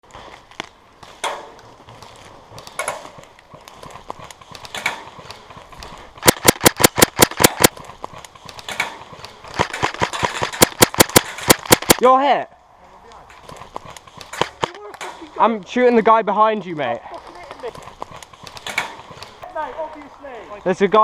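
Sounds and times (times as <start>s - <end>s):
rustling: 0.0s - 12.1s, 12.7s - 15.8s, 16.7s - 20.8s
airsoft rifle shots: 6.2s - 7.8s, 9.5s - 12.1s.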